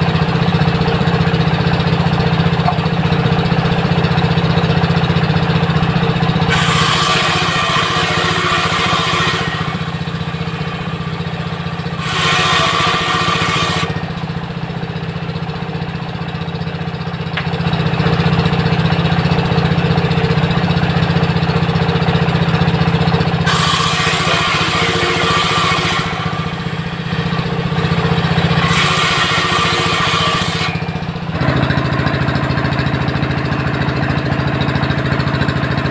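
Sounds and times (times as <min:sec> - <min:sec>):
diesel engine running: 0:00.0 - 0:35.9
circular saw cutting wood: 0:02.4 - 0:14.6, 0:23.4 - 0:35.9.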